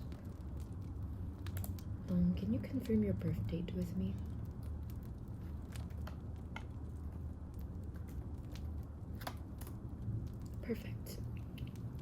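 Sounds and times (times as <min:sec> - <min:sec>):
fire popping and crackling: 0:00.0 - 0:12.0
fireplace low rumble: 0:00.0 - 0:12.0.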